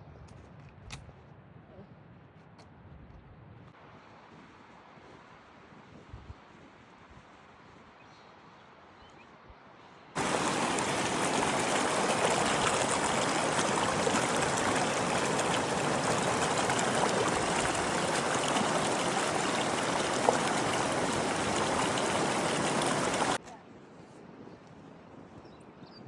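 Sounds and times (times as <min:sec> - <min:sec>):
mountain stream rushing: 0:10.2 - 0:23.4.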